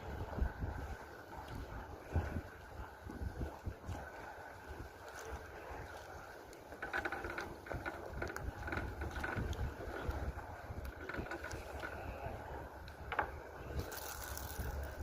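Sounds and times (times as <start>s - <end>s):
wind buffeting microphone: 0.0s - 15.0s
faint clicks and knocks: 5.1s - 15.0s.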